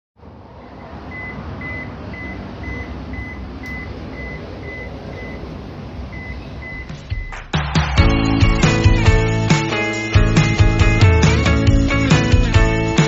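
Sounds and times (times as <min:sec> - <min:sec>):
washing machine alarm beeping: 0:00.6 - 0:07.5.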